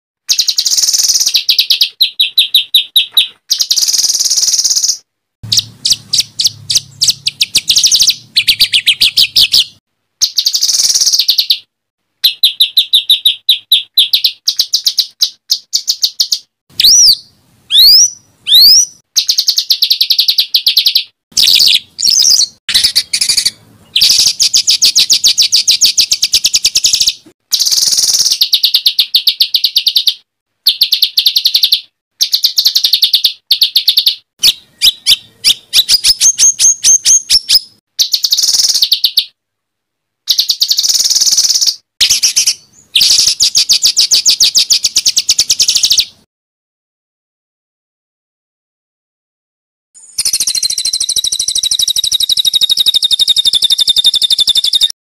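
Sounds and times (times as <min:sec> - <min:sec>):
songbird harsh chattering: 0:00.3 - 0:39.3, 0:40.3 - 0:46.2, 0:50.1 - 0:54.9
rising and falling whistles: 0:16.8 - 0:28.4, 0:50.0 - 0:55.0.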